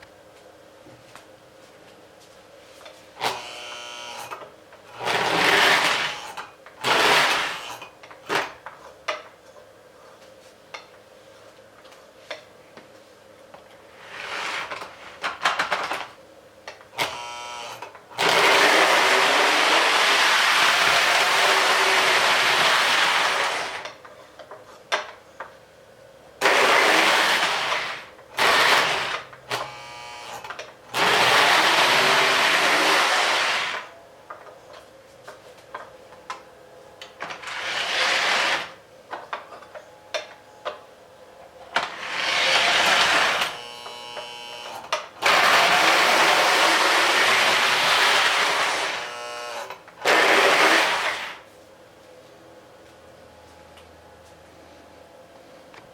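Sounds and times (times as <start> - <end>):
toy train electric motor running: 17.0 - 23.9, 26.4 - 33.9, 37.4 - 38.8, 41.9 - 51.4.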